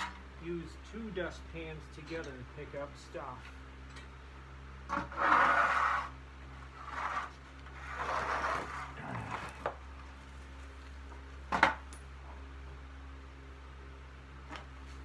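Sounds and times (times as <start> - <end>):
dustpans scraping floor: 4.9 - 6.1, 6.7 - 9.7.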